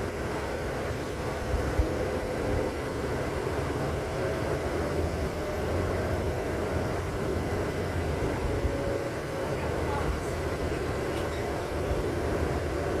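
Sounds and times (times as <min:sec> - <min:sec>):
vehicle rumble: 0:00.0 - 0:13.0.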